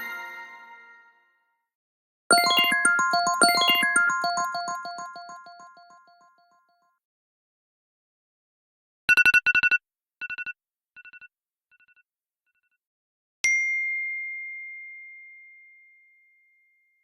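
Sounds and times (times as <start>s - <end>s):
electronic phone ringtone trill: 2.3s - 6.2s.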